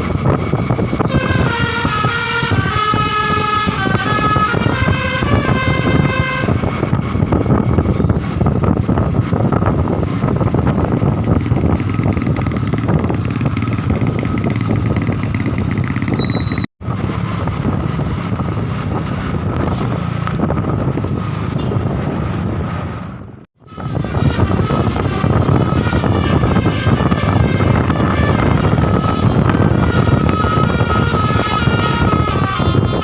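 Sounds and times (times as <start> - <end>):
vehicle engine and road rumble: 0.0 - 33.0.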